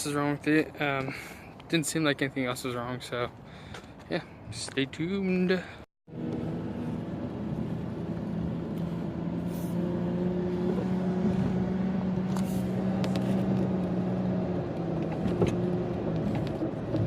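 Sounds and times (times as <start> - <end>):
road noise: 0.0 - 17.0
car engine hum: 6.1 - 17.0.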